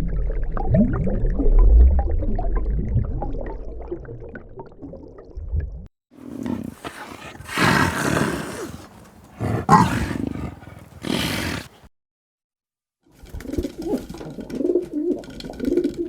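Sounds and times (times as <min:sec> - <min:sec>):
tiger growling and roaring: 0:06.2 - 0:11.8.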